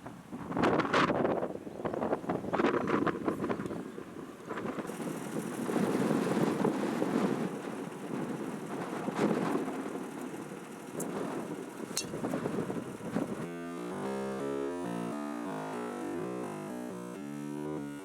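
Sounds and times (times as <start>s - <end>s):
wind buffeting microphone: 0.0s - 13.5s.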